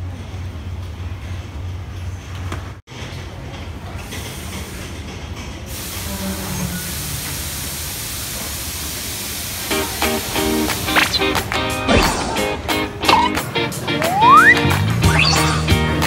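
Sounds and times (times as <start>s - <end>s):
train rumbling on rails: 0.0s - 13.9s
rushing hiss: 5.7s - 11.5s.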